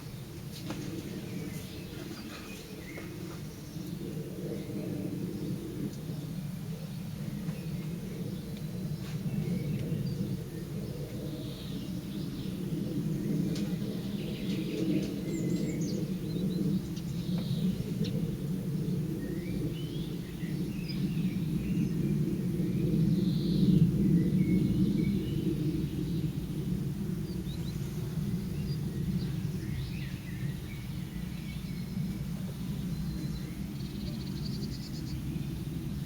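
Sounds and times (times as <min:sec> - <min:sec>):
low outdoor rumble: 0:00.0 - 0:36.0
faint bird chirps and calls: 0:27.2 - 0:35.7.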